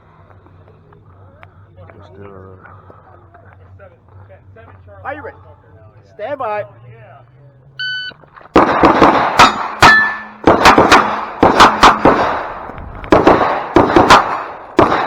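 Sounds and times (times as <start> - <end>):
revolver gunshots: 8.5 - 15.0
metallic ring: 9.4 - 10.4.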